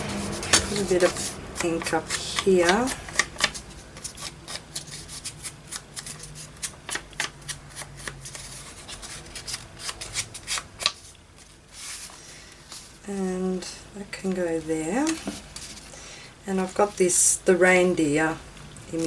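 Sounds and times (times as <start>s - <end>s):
paper rustling: 0.0s - 13.0s, 15.0s - 16.0s.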